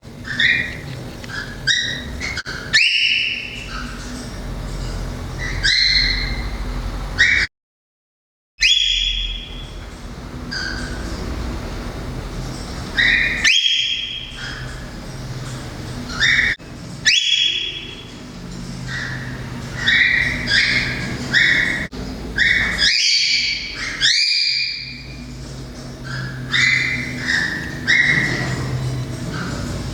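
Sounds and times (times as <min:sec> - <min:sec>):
cockatiel chirping and whistling: 0:00.2 - 0:04.0, 0:05.4 - 0:06.6, 0:07.2 - 0:07.5, 0:08.6 - 0:09.8, 0:10.5 - 0:11.1, 0:13.0 - 0:14.9, 0:16.1 - 0:18.2, 0:18.8 - 0:25.2, 0:26.0 - 0:29.8.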